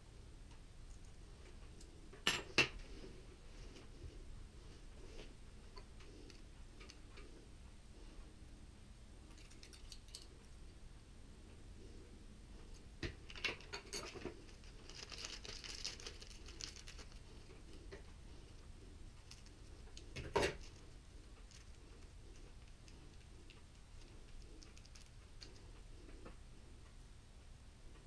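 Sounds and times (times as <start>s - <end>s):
rustling of parts: 12.6s - 26.4s.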